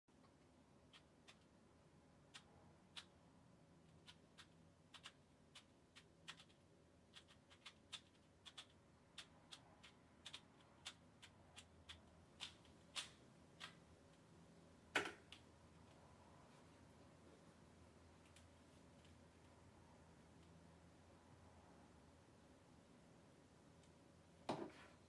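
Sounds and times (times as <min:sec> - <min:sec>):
puzzle cube clicking as turned: 0:04.0 - 0:13.8.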